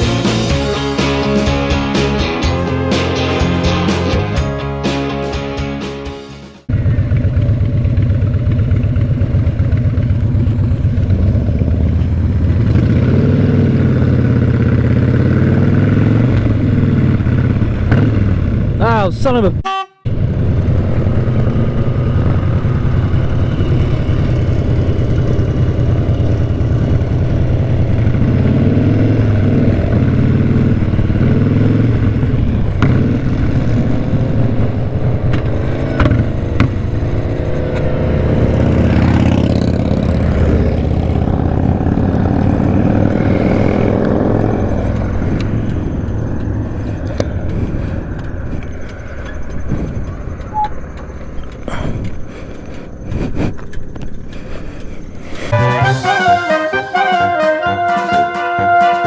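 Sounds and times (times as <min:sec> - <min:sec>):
motorcycle engine revving: 0:06.6 - 0:18.8, 0:20.0 - 0:51.5.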